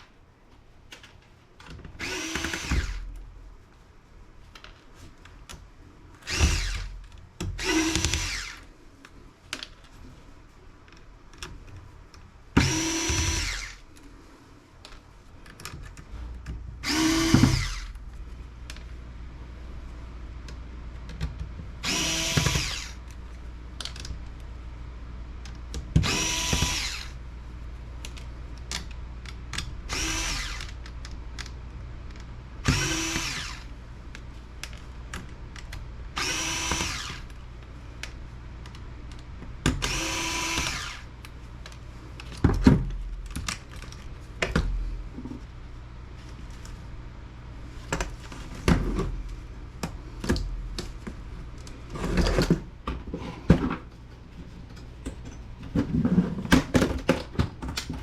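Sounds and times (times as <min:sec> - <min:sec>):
electric screwdriver whirring: 0:02.0 - 0:03.1, 0:06.2 - 0:07.0, 0:07.6 - 0:08.7, 0:12.6 - 0:13.8, 0:16.8 - 0:18.0, 0:21.8 - 0:23.0, 0:26.0 - 0:27.2, 0:29.9 - 0:30.8, 0:32.6 - 0:33.7, 0:36.2 - 0:37.3, 0:39.8 - 0:41.1.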